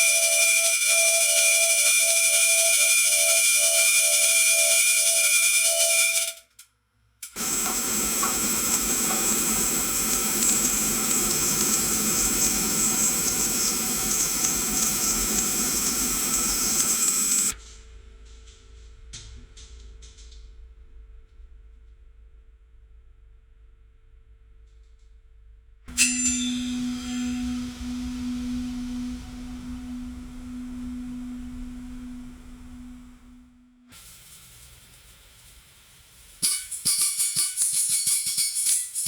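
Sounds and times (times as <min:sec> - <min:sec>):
bright hissing with high tones: 0:07.4 - 0:17.6, 0:25.9 - 0:39.0
low steady hum: 0:07.4 - 0:17.6, 0:25.9 - 0:34.6
water draining through pipes: 0:07.4 - 0:17.6.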